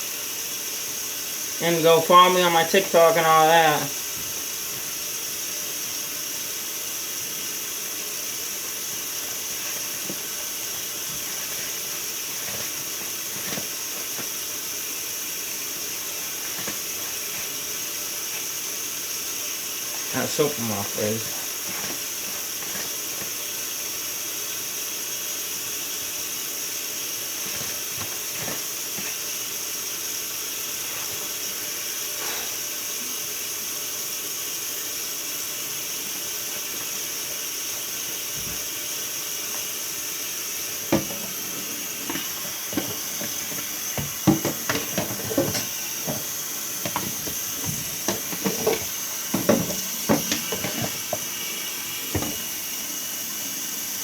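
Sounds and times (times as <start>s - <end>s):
tap water running into sink: 1.2s - 24.3s, 26.1s - 32.0s, 35.4s - 53.2s
items knocking in sink: 9.6s - 14.4s, 16.3s - 17.6s, 40.8s - 51.5s, 52.1s - 52.5s.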